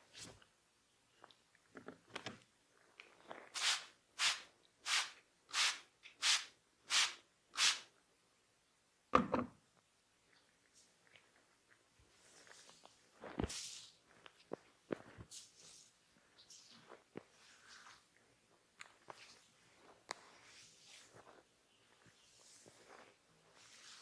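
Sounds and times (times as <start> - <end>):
hands rubbing swishing strokes: 3.6 - 7.8, 17.3 - 18.1, 20.2 - 21.3, 22.1 - 24.0.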